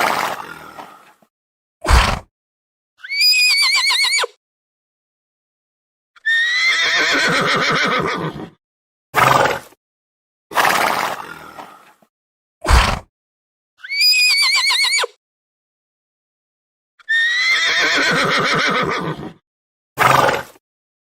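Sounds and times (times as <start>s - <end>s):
horse whinnying: 3.0s - 4.3s, 6.2s - 8.6s, 13.8s - 15.2s, 17.0s - 19.4s.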